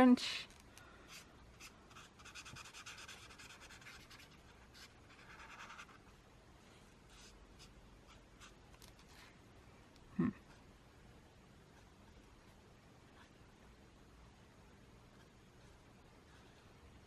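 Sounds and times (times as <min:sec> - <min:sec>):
colouring strokes on paper: 0:01.1 - 0:06.1.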